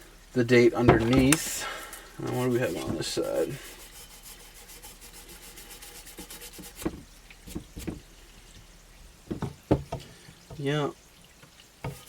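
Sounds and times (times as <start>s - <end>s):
scratchy rubbing strokes: 1.6s - 7.9s.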